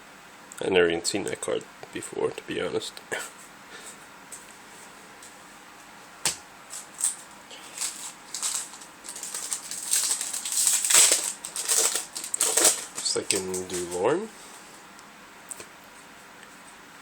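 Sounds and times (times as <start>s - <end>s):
foil pack crinkling: 6.3s - 14.8s.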